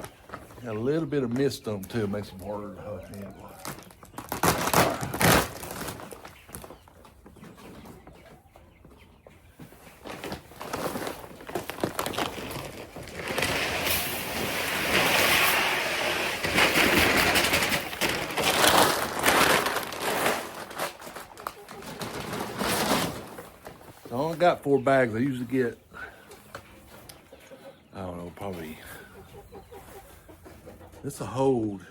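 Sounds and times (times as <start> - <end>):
feed pellets pouring into drum: 13.1 - 18.1.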